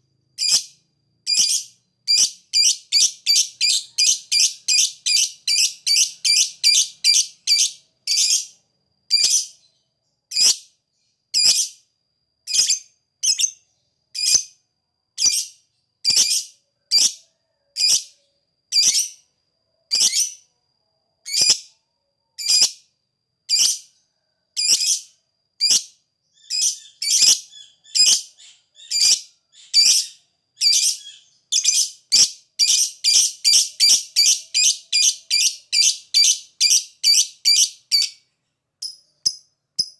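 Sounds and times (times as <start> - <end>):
lovebird chirping: 0.4 - 11.8, 12.5 - 14.6, 15.2 - 19.3, 19.9 - 20.5, 21.2 - 21.8, 22.4 - 22.9, 23.5 - 24.0, 24.6 - 39.9.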